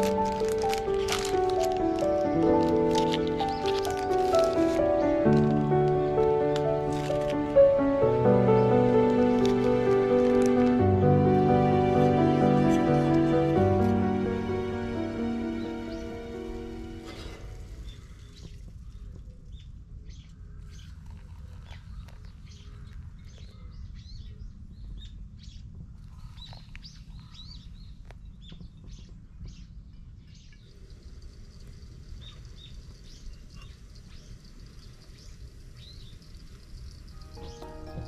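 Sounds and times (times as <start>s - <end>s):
steady low rumble: 0.0s - 30.3s
small birds chirping: 0.0s - 38.0s.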